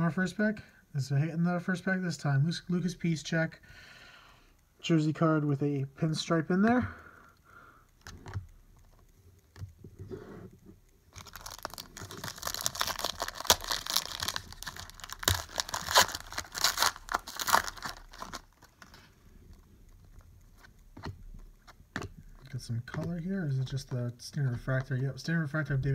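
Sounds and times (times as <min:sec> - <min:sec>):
foil wrapper tearing and crinkling: 0:11.1 - 0:19.1.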